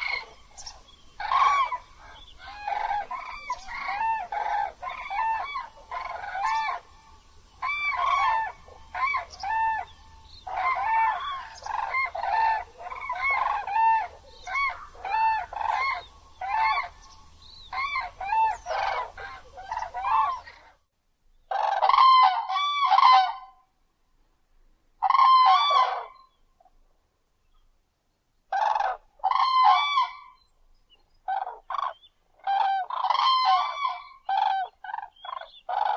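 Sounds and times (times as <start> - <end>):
crane honking calls: 0.0 - 20.7.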